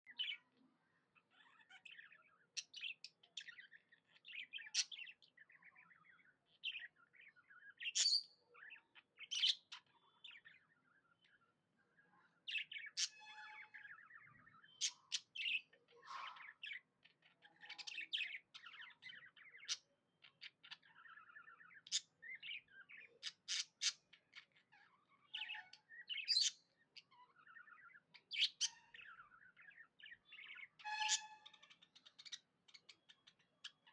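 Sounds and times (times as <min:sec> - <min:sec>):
budgies chattering: 0:00.1 - 0:33.9.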